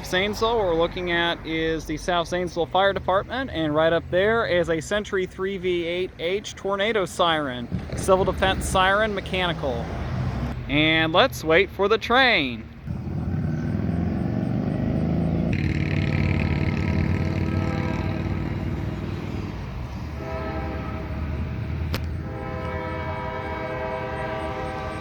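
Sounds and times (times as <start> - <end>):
freight train rumbling by: 15.0 - 25.0
locomotive air horn chord: 17.1 - 19.2, 19.9 - 25.0.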